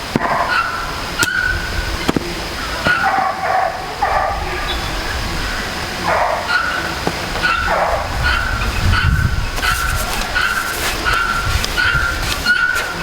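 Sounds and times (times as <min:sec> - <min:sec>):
short animal calls: 0:06.0 - 0:13.0.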